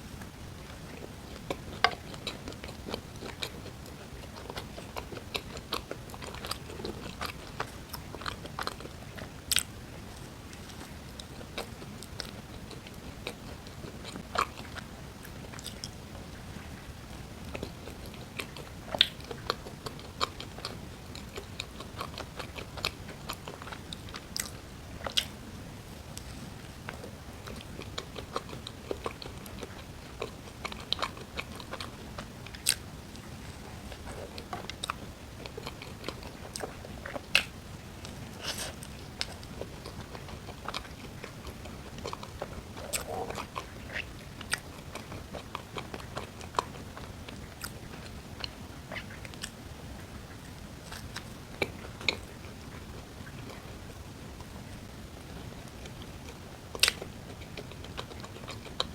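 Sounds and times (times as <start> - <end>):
low hiss: 0.0 - 58.9
person chewing and biting food: 33.5 - 49.6, 55.8 - 58.9.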